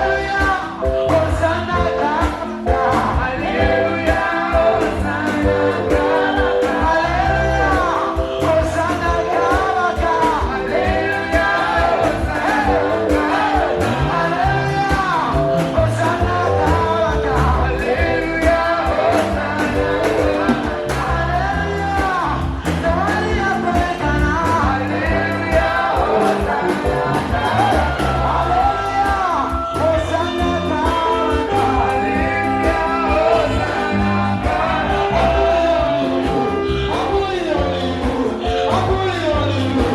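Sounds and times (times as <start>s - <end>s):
singers over a band: 0.0s - 39.9s
people shouting: 27.1s - 36.0s.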